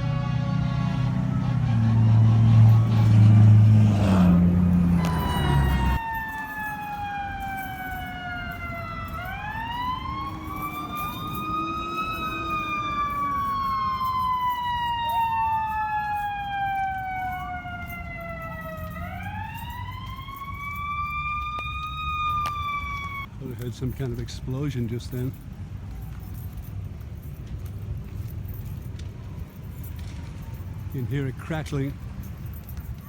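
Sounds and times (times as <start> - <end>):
emergency sirens wailing: 0.0 - 23.4
loud low vehicle rumble: 0.0 - 33.0.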